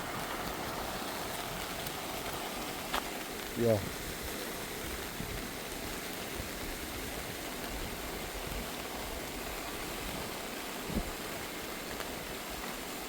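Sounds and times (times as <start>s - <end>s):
river water rushing: 0.0s - 13.0s.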